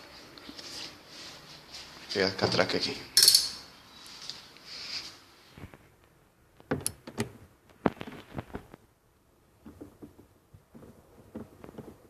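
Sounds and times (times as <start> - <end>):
rustling: 7.4 - 8.9, 9.5 - 12.0.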